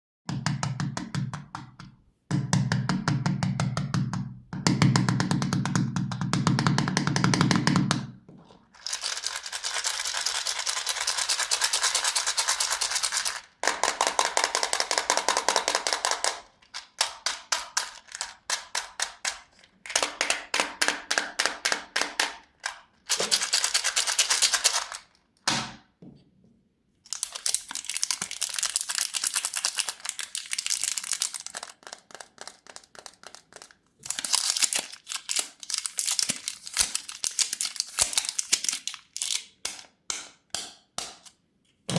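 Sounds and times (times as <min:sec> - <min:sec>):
plastic wrappers crinkling: 0:27.1 - 0:39.9.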